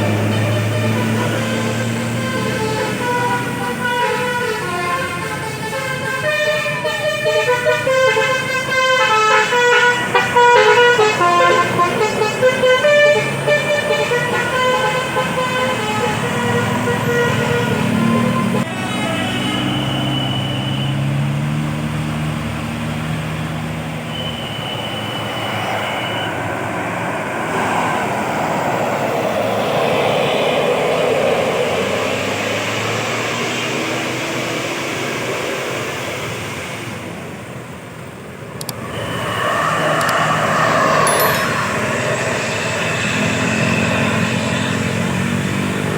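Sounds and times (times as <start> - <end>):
multi-tone musical bus horn: 0.0 - 21.3, 39.9 - 45.9
bus engine running: 0.0 - 45.9
vehicle approaching: 0.0 - 45.9.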